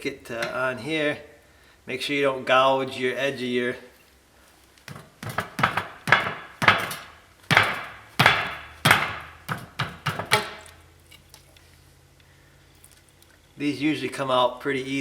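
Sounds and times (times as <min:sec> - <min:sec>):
sharp ringing metal knocks: 0:04.9 - 0:10.8.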